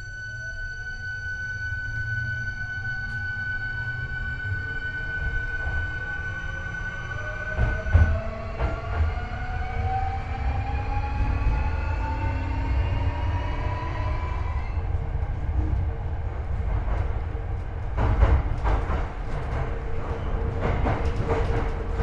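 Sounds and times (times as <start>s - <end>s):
low rumble on rails: 0.0s - 22.0s.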